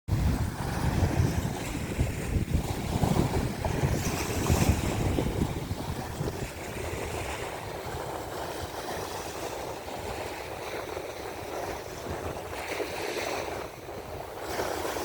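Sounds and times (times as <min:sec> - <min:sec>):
sea waves washing in: 0:00.1 - 0:15.0
wind buffeting microphone: 0:00.1 - 0:15.0.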